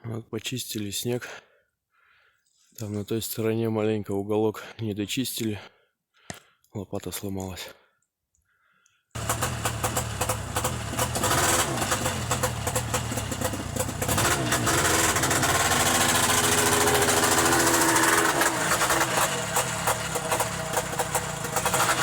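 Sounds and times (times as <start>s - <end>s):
snowmobile engine running: 9.2s - 22.0s.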